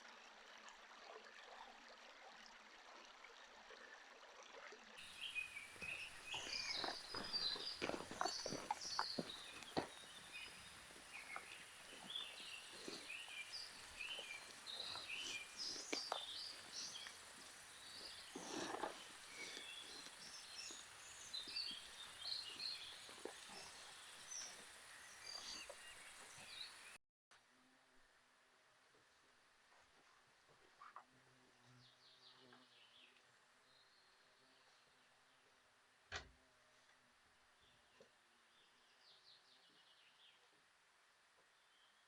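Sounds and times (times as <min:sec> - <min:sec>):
birds chirping: 0:05.0 - 0:27.0.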